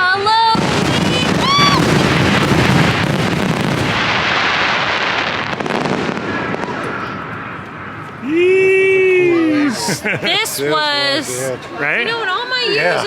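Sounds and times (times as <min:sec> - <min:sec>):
fireworks bursting: 0:00.0 - 0:11.4
person shouting: 0:08.2 - 0:10.0.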